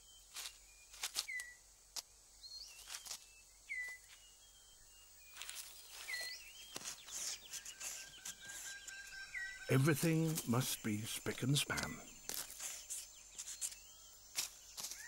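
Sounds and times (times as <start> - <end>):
leaves rustling and scraping: 0.2 - 4.4, 5.2 - 15.0
curling bird whistles: 1.2 - 1.6, 2.5 - 4.1, 5.9 - 9.8.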